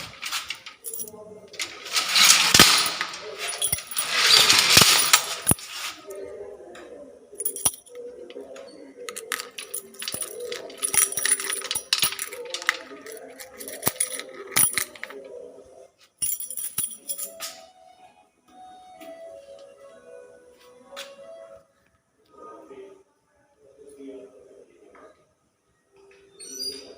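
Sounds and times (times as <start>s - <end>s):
metal gate rattling and clanking: 0.0s - 5.6s, 9.1s - 15.1s.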